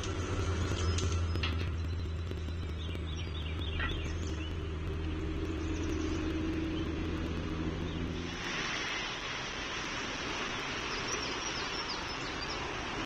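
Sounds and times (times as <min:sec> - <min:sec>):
low mechanical hum: 0:00.0 - 0:13.0
bird chirping: 0:00.6 - 0:08.3.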